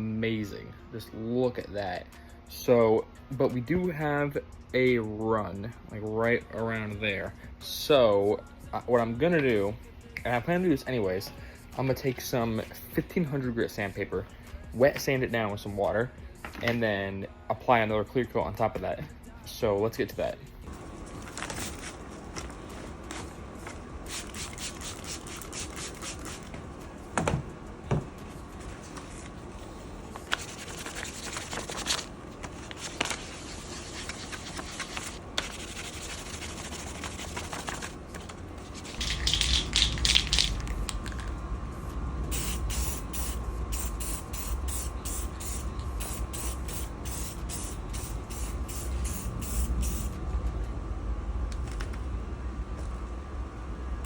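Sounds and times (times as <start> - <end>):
sandpaper rubbing strokes: 24.0 - 26.5, 30.2 - 37.9, 42.6 - 50.1
low steady rumble: 37.7 - 54.0
spray hissing: 42.3 - 50.2.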